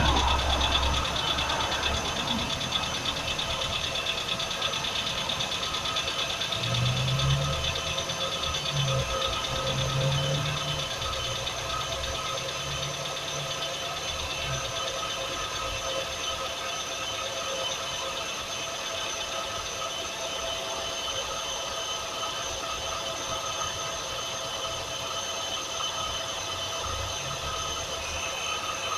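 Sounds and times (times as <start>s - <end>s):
car engine idling: 0.0s - 16.4s
high-pitched engine whine: 0.0s - 28.9s.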